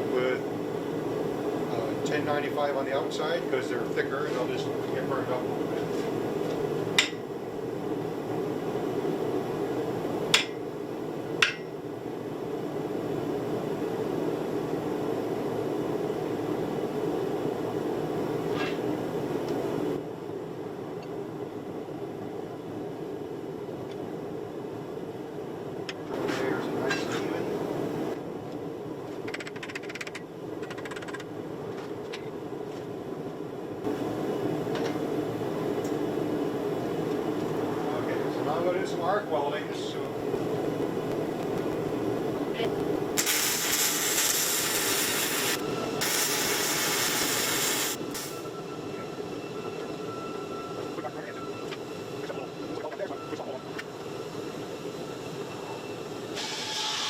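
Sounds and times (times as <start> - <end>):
gas forge burner roaring: 0.0 - 29.3, 32.3 - 57.0
arc welder crackling: 41.0 - 48.4.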